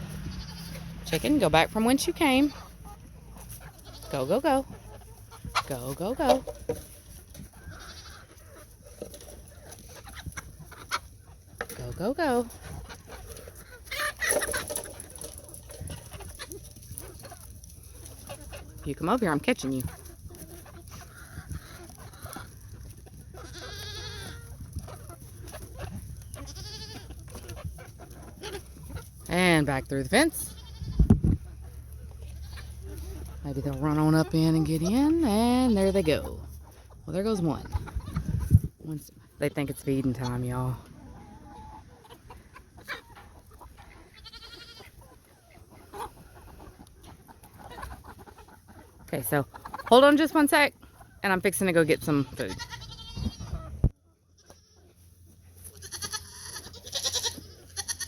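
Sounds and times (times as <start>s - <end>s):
goat bleating: 0.0s - 1.0s, 3.6s - 4.5s, 7.5s - 8.6s, 23.3s - 24.6s, 26.2s - 29.1s, 30.1s - 31.1s, 32.2s - 33.2s, 43.8s - 45.0s, 52.0s - 53.7s, 54.3s - 55.0s, 55.6s - 58.0s
farmyard noise: 0.0s - 58.0s.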